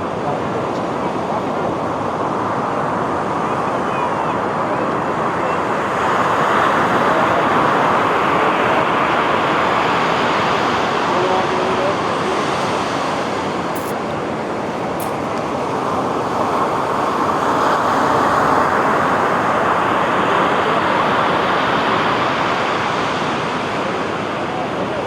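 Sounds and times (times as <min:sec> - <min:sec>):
ocean waves on a beach: 0:00.0 - 0:25.0.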